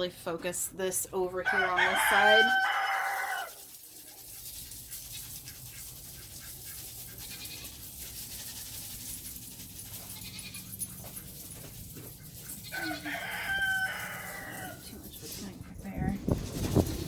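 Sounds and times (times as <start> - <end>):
granules sprinkling on floor: 1.8 - 14.8.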